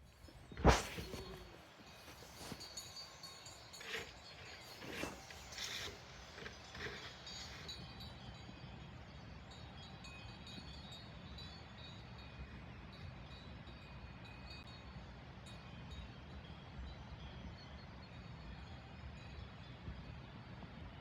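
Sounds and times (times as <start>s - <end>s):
cowbells clinking: 1.0s - 14.9s.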